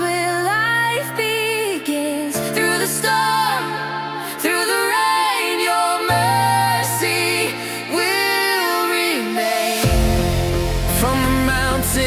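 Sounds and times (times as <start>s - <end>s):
ambient electronic music: 6.0s - 12.0s.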